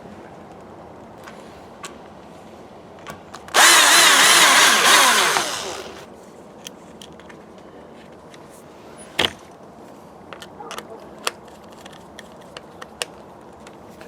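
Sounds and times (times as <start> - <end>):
power drill running: 3.5 - 6.1.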